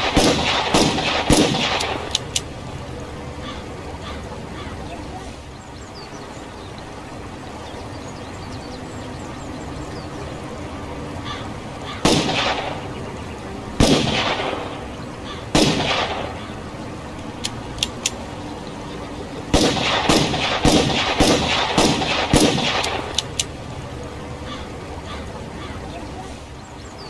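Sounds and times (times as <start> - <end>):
background hiss: 0.0 - 27.0
light clicks: 0.7 - 2.8, 17.1 - 18.4, 22.4 - 23.8.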